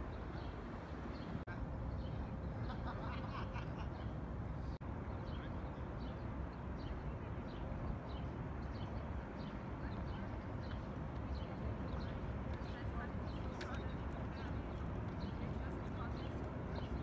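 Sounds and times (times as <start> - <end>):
low city rumble: 0.0 - 17.0
small birds chirping: 5.1 - 17.0.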